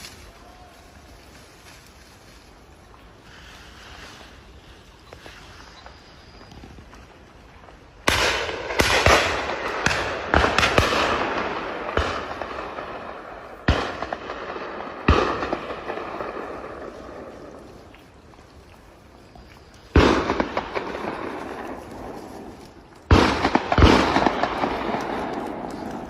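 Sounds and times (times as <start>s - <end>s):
gunshots with echo: 8.1s - 17.6s, 20.0s - 22.1s, 23.1s - 26.0s.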